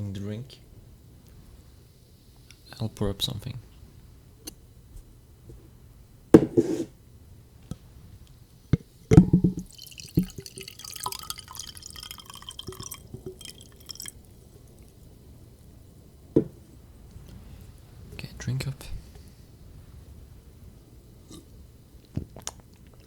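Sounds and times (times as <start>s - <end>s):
bottle and glass clinking: 9.1s - 14.2s
drink pouring into glass: 9.1s - 15.2s.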